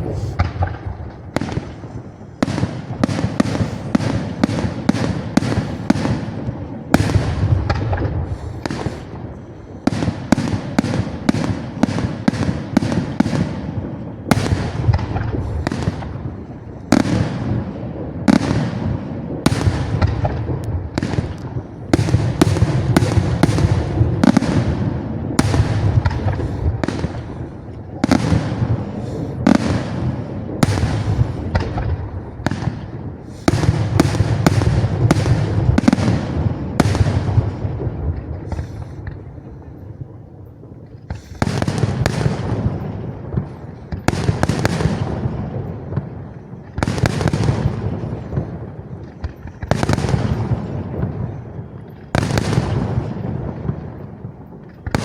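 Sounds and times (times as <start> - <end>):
low rumble and crackle: 0.0 - 55.0.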